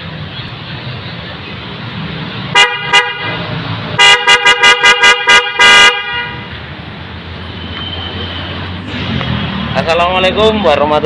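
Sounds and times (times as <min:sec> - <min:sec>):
car horn toots: 0:02.6 - 0:03.4, 0:04.0 - 0:06.5.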